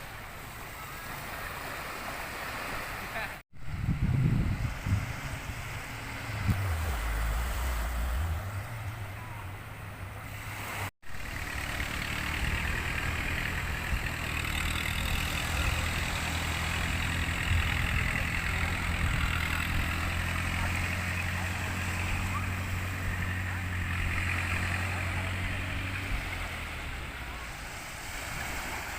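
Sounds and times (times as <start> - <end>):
engine humming: 3.6 - 28.9.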